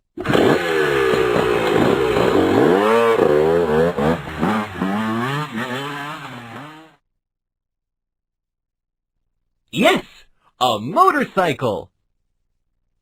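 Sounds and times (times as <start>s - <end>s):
motorcycle engine revving: 0.0s - 7.0s.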